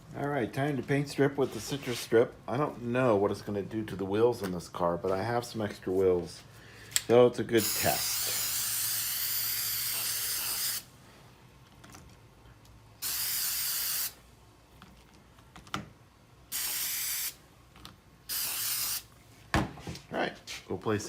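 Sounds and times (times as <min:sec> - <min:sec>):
aerosol can spraying: 0:07.6 - 0:10.8, 0:13.0 - 0:14.2, 0:16.5 - 0:17.4, 0:18.3 - 0:19.1.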